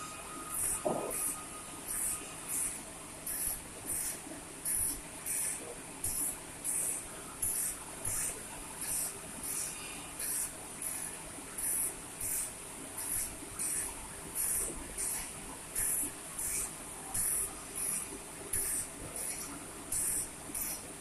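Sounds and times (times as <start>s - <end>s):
short bursts of hiss: 18.6s - 20.8s.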